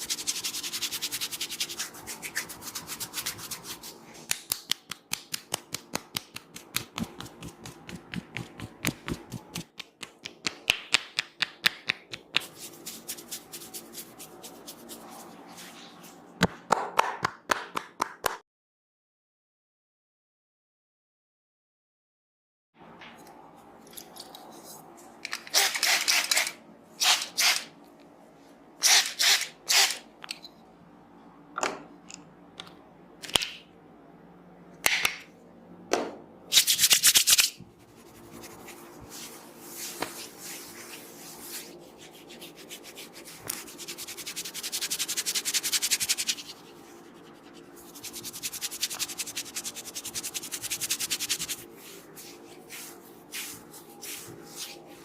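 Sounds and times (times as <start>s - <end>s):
hands scratching hair and scalp: 0.0s - 4.4s, 5.2s - 10.4s, 12.1s - 16.2s, 36.5s - 55.0s.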